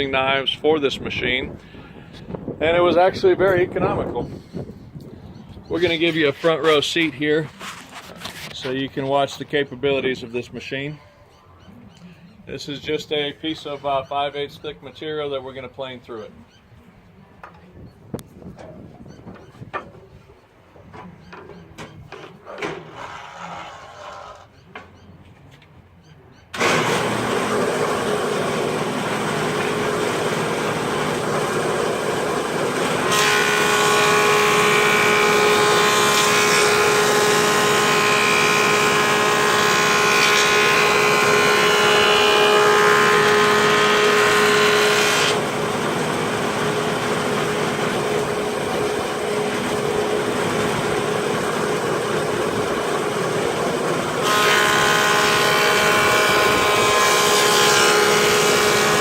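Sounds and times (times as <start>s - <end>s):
board cutting with whine: 26.5s - 59.0s
planer running: 26.6s - 59.0s.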